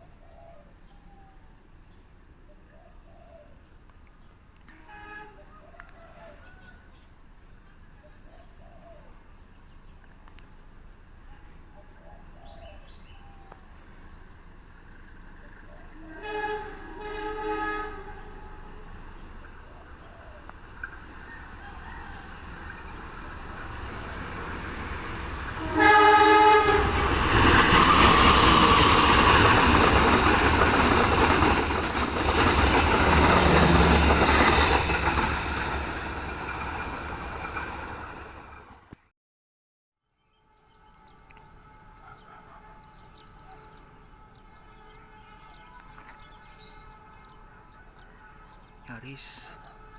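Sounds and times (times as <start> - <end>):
train rumbling past: 3.4 - 38.9, 40.6 - 49.9
train horn blasts: 4.6 - 5.6, 15.9 - 19.0, 24.9 - 29.8, 33.1 - 34.8, 40.4 - 49.9
train wheels clattering: 20.5 - 38.8.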